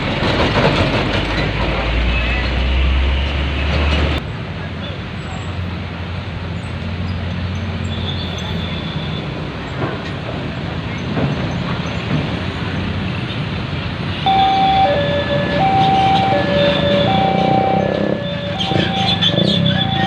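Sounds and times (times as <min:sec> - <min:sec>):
road traffic rumble: 0:00.0 - 0:20.0
bus horn alternating two notes: 0:14.3 - 0:19.2.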